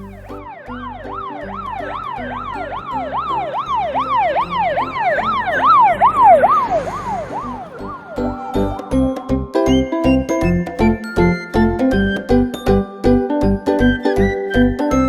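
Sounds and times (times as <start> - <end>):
fire engine siren yelping: 0.0 - 10.5.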